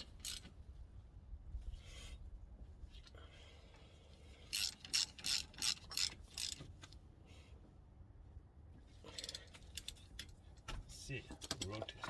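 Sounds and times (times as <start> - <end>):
hand ratchet clicking: 4.5 - 6.6.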